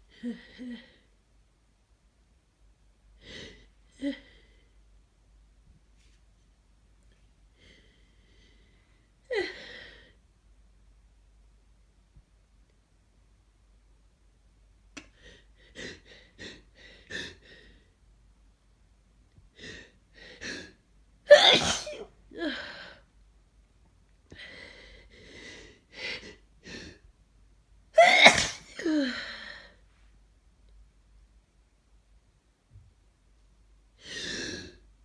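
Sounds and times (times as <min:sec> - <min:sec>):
person sneezing: 0:21.3 - 0:22.1, 0:28.0 - 0:29.0.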